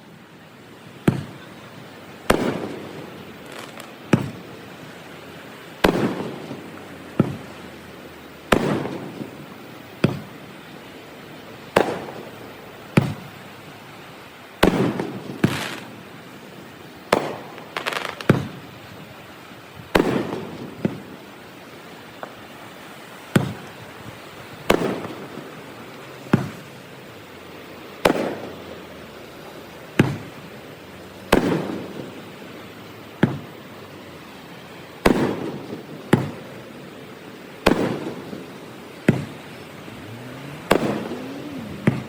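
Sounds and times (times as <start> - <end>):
fireworks crackle: 0.0 - 42.0
fireworks bangs with rolling echo: 0.9 - 33.7, 34.4 - 42.0.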